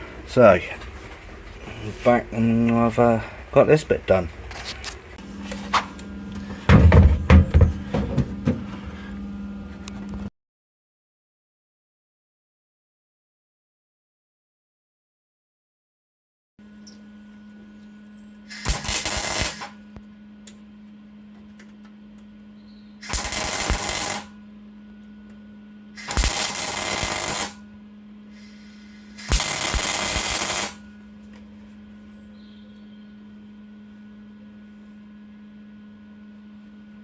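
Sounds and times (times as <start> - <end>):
steady low hum: 0.0 - 10.3, 16.6 - 37.0
welder buzzing bursts: 18.5 - 19.8, 23.0 - 24.4, 25.9 - 27.7, 28.3 - 30.9.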